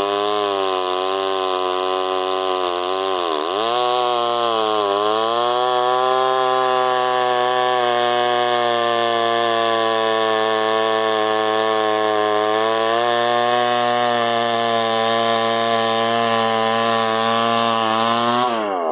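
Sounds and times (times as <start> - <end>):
chainsaw cutting wood: 0.0 - 18.9.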